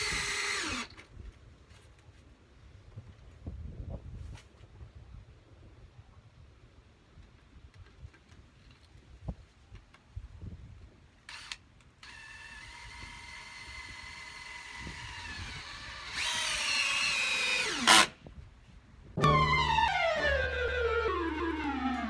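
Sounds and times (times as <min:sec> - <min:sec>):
power drill motor running: 0:00.0 - 0:00.9, 0:11.3 - 0:18.1, 0:19.2 - 0:22.0.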